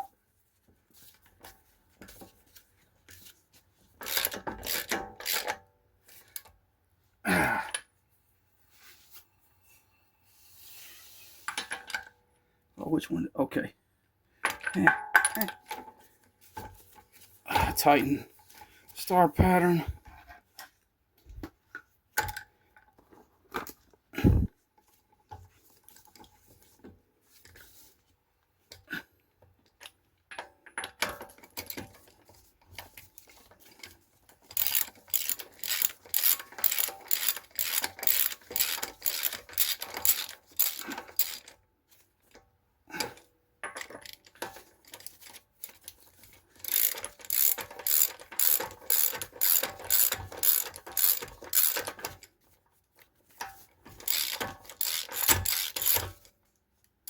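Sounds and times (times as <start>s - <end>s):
ratchet wrench clicking: 4.0s - 5.5s, 34.5s - 41.5s, 46.6s - 52.2s, 54.0s - 56.2s.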